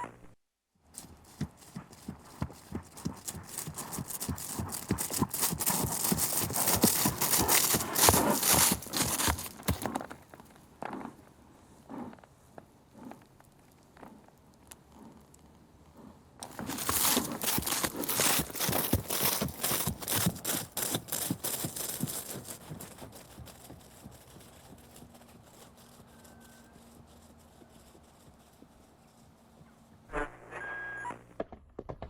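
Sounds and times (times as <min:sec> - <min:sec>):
galloping horse hoofbeats: 0:00.9 - 0:11.2, 0:15.9 - 0:30.0.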